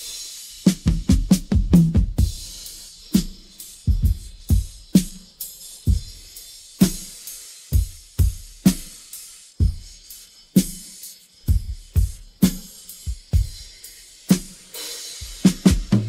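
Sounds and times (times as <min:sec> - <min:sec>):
snare drum: 0:00.0 - 0:05.3, 0:15.2 - 0:16.0
cymbal and hi-hat wash: 0:00.0 - 0:16.0
bass drum: 0:00.7 - 0:03.3, 0:03.9 - 0:05.3, 0:15.2 - 0:16.0.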